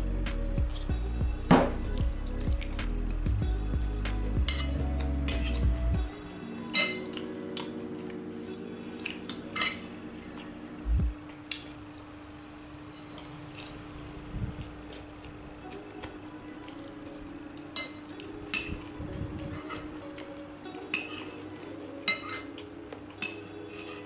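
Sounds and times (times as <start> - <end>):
cutlery clinking on a plate: 6.7 - 7.7, 9.0 - 10.0, 17.7 - 18.9, 19.6 - 19.9, 20.9 - 24.0.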